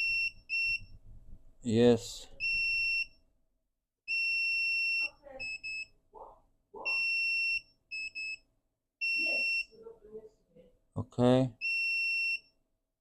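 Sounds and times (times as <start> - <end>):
multimeter continuity beeps: 2.4 - 3.2, 4.1 - 6.0, 6.9 - 9.8, 11.6 - 12.5.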